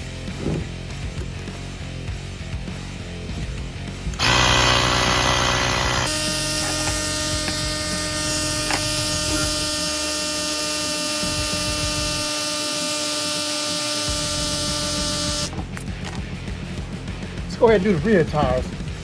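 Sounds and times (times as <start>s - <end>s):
electric tire inflator motor whine: 4.2s - 17.0s.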